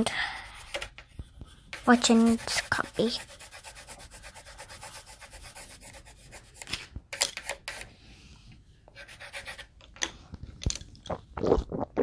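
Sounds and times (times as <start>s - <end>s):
pencil scribbling on paper: 0.0s - 7.9s, 9.0s - 9.7s.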